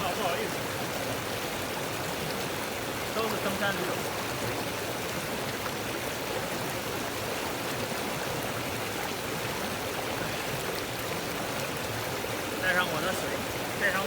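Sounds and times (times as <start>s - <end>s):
mountain stream rushing: 0.0s - 14.0s.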